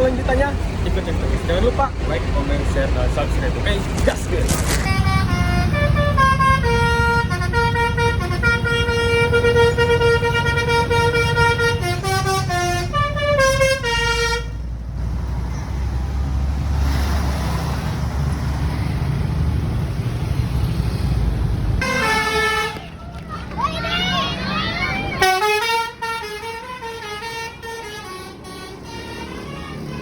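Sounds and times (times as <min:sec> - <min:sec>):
bus engine rumbling: 0:00.0 - 0:30.0
bus horn playing melody: 0:04.8 - 0:14.7, 0:21.8 - 0:23.0, 0:25.2 - 0:30.0.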